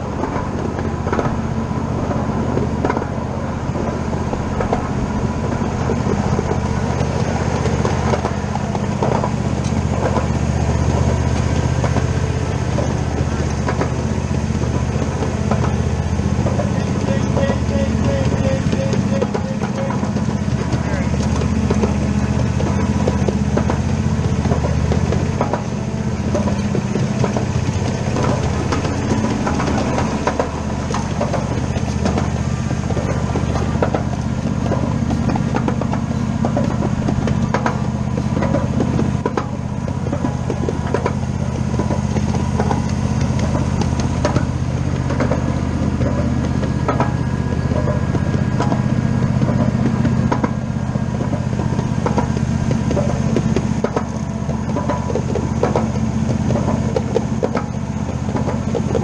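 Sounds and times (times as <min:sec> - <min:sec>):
engine running steadily: 0:00.0 - 0:59.0.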